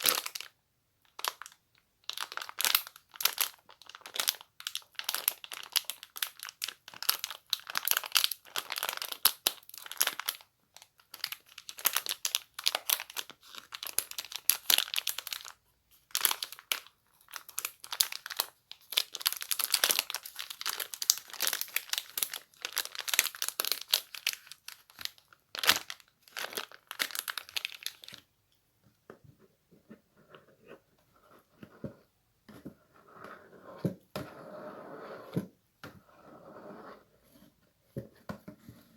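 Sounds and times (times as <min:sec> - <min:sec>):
crinkly material crumpling: 0:01.1 - 0:28.3
soft handling sounds: 0:27.5 - 0:38.9.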